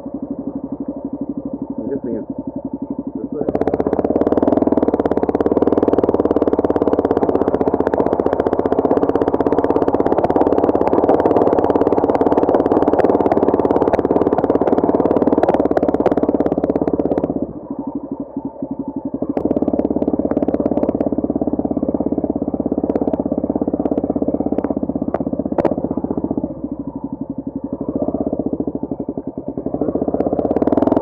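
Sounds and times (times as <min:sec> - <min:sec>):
motorcycle engine running: 0:00.0 - 0:31.0.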